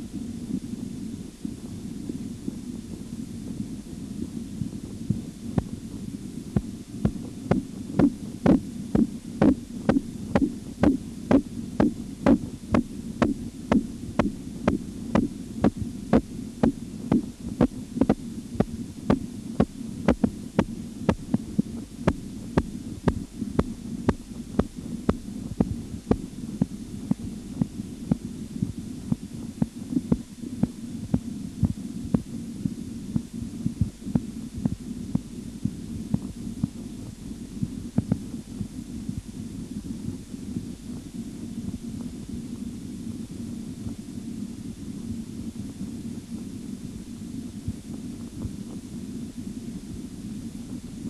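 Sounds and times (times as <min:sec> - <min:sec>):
steady low hum: 0:00.0 - 0:51.0
pulsing heartbeat thuds: 0:06.6 - 0:32.3.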